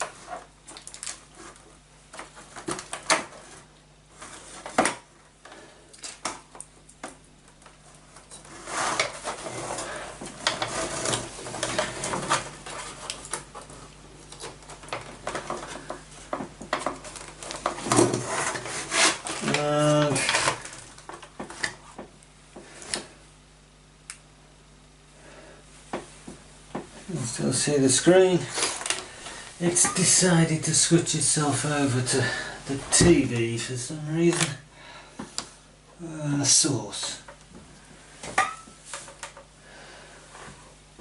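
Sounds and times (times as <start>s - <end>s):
rubbing and rustling: 0.0s - 5.1s, 7.7s - 23.0s.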